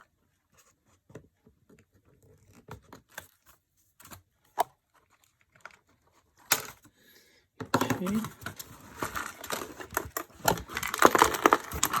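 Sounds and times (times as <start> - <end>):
plastic clicks and scrapes: 7.7 - 12.0.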